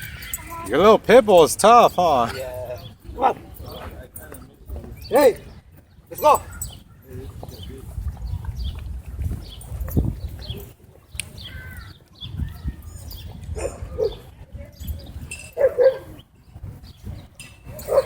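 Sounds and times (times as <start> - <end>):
dogs barking: 3.1 - 3.6, 13.5 - 14.3, 15.5 - 16.2, 17.7 - 18.0
high chirping calls: 4.8 - 8.8.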